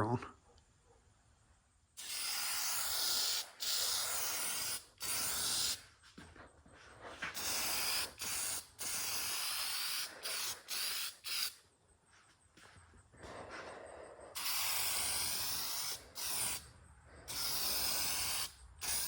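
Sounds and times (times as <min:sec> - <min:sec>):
aerosol can spraying: 0:02.0 - 0:05.9, 0:07.2 - 0:11.6, 0:14.4 - 0:16.7, 0:17.3 - 0:19.0.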